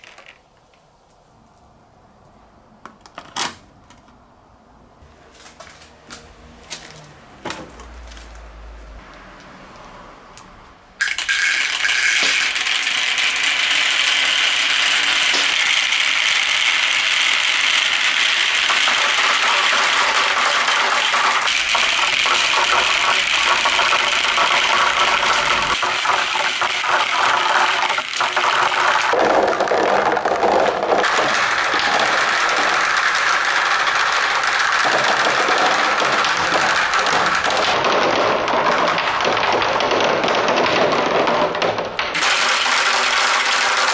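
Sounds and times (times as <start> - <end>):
marbles rolling and rattling: 0.0 - 0.5, 11.0 - 43.9.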